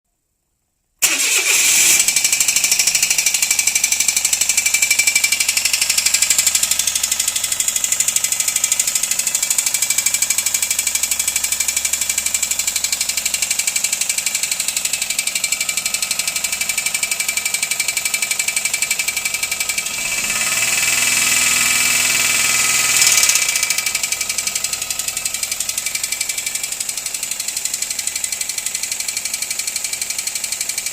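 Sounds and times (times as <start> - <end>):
engine running with turbo whine: 19.1 - 28.9.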